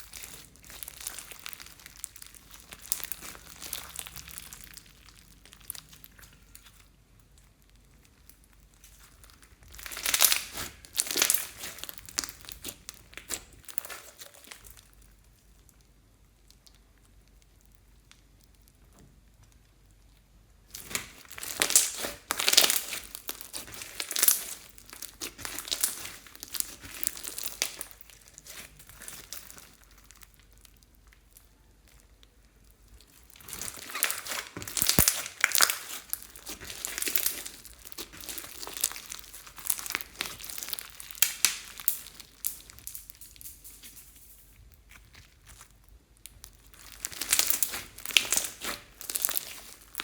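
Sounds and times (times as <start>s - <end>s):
slime crackling and popping: 0.0s - 50.0s.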